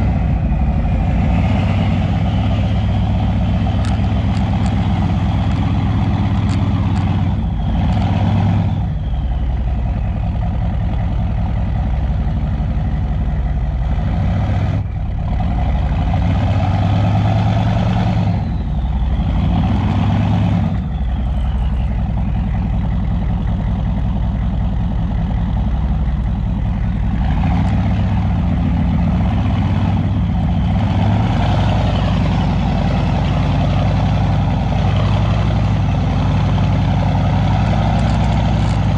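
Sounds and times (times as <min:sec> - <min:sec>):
turbo whistle: 0:00.0 - 0:11.7, 0:16.9 - 0:25.0
diesel engine revving: 0:00.0 - 0:38.9.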